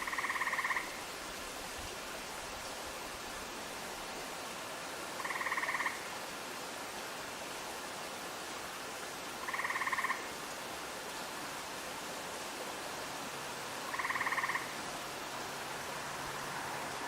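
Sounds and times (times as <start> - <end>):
frog trilling: 0.0 - 1.0, 5.2 - 6.0, 9.4 - 10.2, 13.9 - 14.8
steady hiss: 0.0 - 17.0.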